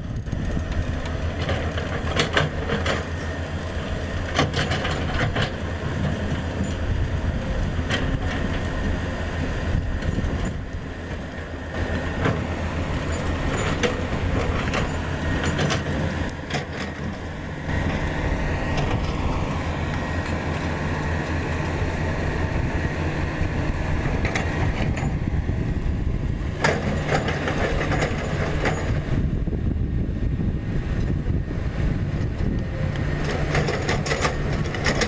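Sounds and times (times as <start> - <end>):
diesel engine running: 0.0 - 35.0.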